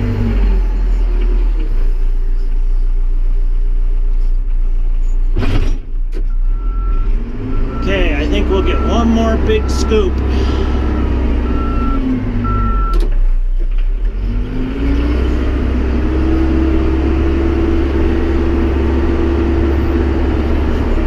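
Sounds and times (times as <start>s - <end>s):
backhoe engine running under load: 0.0s - 21.0s
high beeps: 7.6s - 13.0s.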